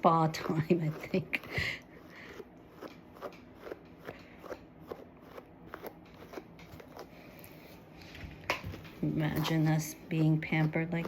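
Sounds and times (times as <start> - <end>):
brush scraping through fur: 9.2 - 11.0.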